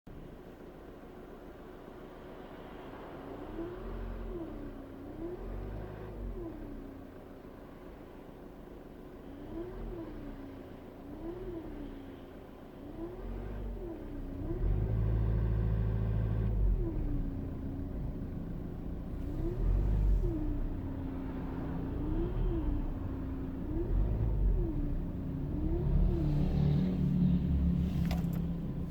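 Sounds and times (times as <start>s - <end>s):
low engine rumble: 13.6s - 28.9s.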